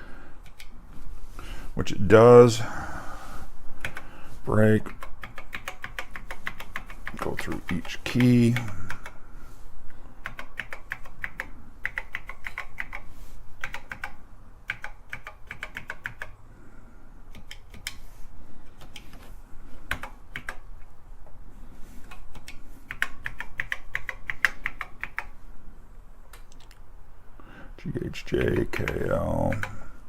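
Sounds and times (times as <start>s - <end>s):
keyboard keys clicking: 3.8s - 4.1s, 4.8s - 9.2s, 10.2s - 16.4s, 17.3s - 18.0s, 19.9s - 20.6s, 22.1s - 25.4s, 28.3s - 29.8s.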